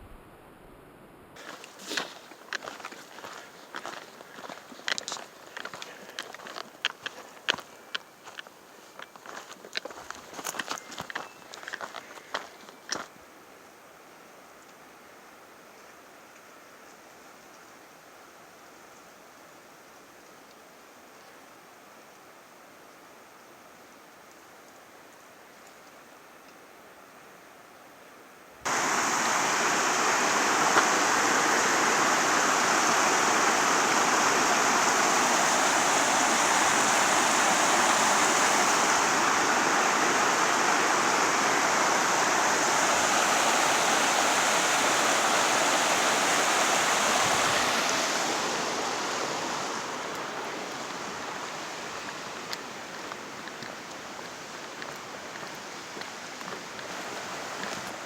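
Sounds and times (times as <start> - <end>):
rushing stream water: 1.4 - 13.1, 28.7 - 58.0.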